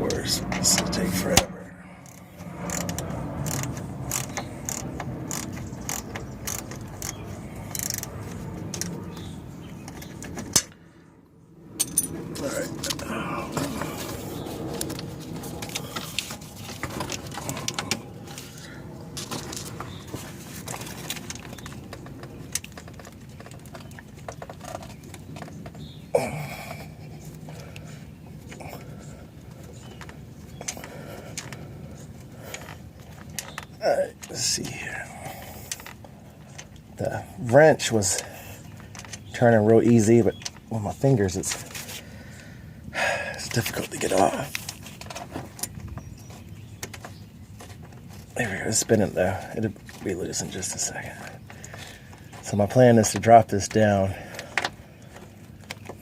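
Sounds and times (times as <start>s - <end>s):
steady low hum: 0.0s - 56.0s
ratchet wrench clicking: 2.7s - 8.1s.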